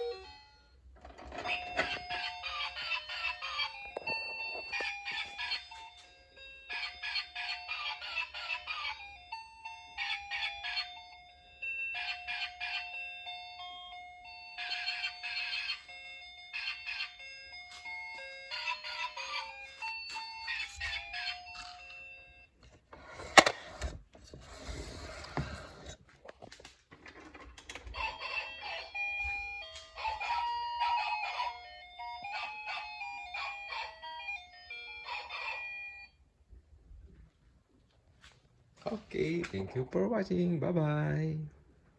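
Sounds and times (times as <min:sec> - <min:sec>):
electronic toy beeping melodies: 0:01.3 - 0:23.8, 0:28.0 - 0:36.2.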